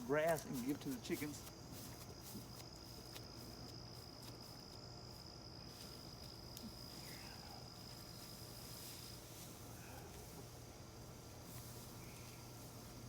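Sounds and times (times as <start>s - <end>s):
cricket trilling: 0.0s - 13.0s.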